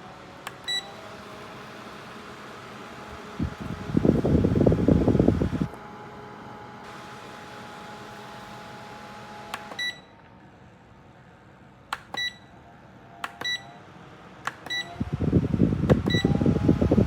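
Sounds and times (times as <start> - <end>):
fan airflow buffeting microphone: 0.0 - 9.8, 13.9 - 17.0
fan humming: 0.0 - 12.2, 13.0 - 17.0.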